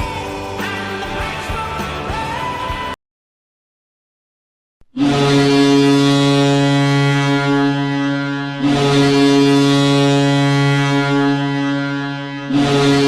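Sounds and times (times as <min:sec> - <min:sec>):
goal horn blasts: 0:04.9 - 0:13.0.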